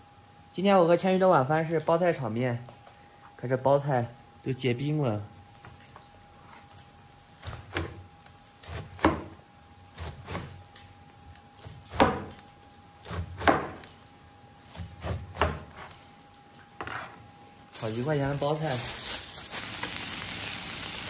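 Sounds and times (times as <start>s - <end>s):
knife chopping frozen cabbage: 7.4s - 8.0s, 8.6s - 9.4s, 10.0s - 10.6s, 11.6s - 12.4s, 13.0s - 13.8s, 14.7s - 15.9s.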